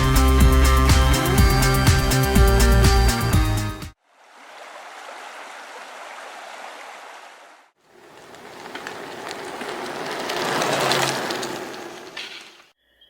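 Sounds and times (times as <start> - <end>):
music: 0.0 - 4.0
flowing water rushing: 4.1 - 8.8
outdoor ambience with faint ticks: 8.0 - 12.6.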